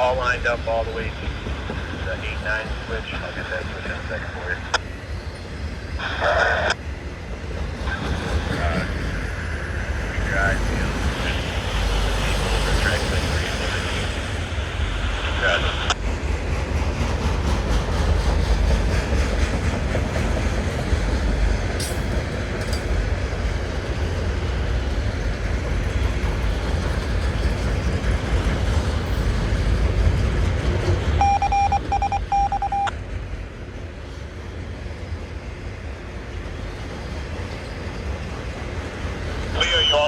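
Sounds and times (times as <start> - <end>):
freight train rumbling past: 0.0 - 40.0
pulsing electronic beeps: 31.2 - 32.9.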